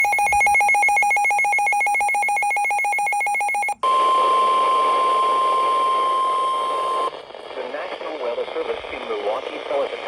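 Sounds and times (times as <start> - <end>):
rapid electronic beeping: 0.0 - 4.2
steady single-pitch alarm tone: 0.0 - 7.1.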